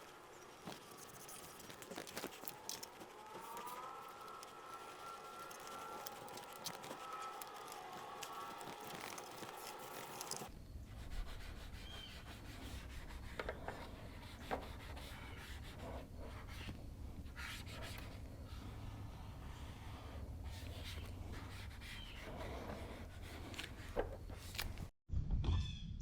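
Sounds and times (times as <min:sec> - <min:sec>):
hands rubbing on vinyl: 0:00.0 - 0:18.7.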